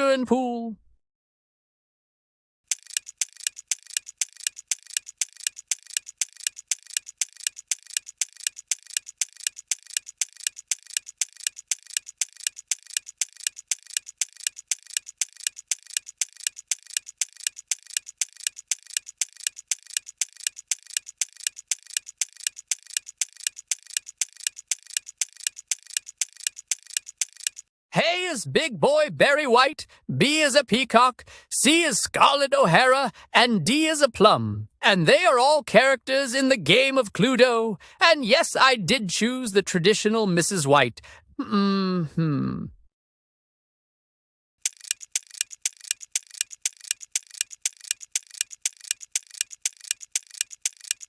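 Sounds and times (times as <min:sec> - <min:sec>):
clock ticking: 0:02.7 - 0:27.6, 0:44.6 - 0:51.0.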